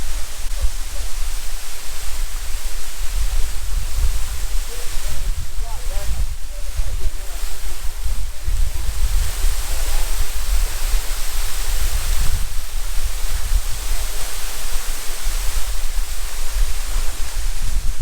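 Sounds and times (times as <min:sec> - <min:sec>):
low uneven rumble: 0:00.0 - 0:11.3
waterfall rushing: 0:00.0 - 0:17.9.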